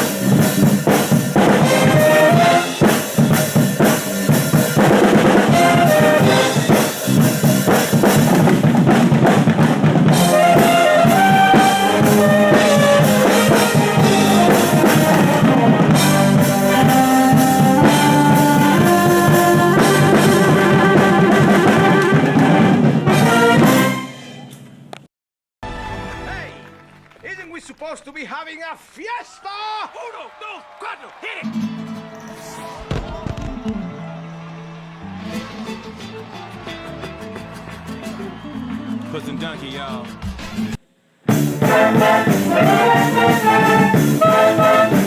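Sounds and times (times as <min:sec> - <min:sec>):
brass playing melody: 0:00.0 - 0:08.0, 0:10.1 - 0:24.2, 0:41.3 - 0:45.0
drum kit and bass drum: 0:00.0 - 0:22.8, 0:32.6 - 0:44.3.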